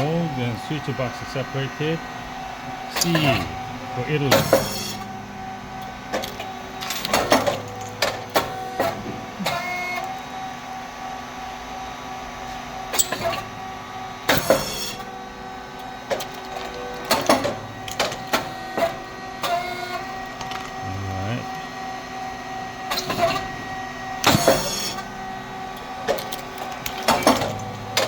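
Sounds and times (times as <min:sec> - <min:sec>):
machine humming: 0:00.0 - 0:28.0
mechanical clacks and knocks: 0:04.3 - 0:05.0, 0:06.1 - 0:09.6, 0:16.1 - 0:19.6, 0:26.0 - 0:28.0.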